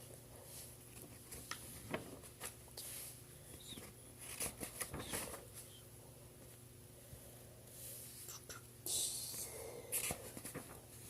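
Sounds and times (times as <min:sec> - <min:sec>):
low steady hum: 0:00.0 - 0:11.0
paper rustling: 0:00.9 - 0:02.6, 0:03.8 - 0:05.7, 0:10.0 - 0:11.0.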